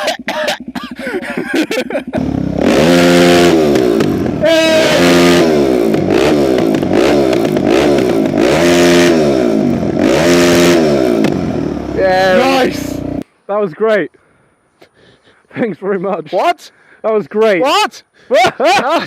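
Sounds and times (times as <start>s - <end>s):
motorcycle engine revving: 1.9s - 13.2s.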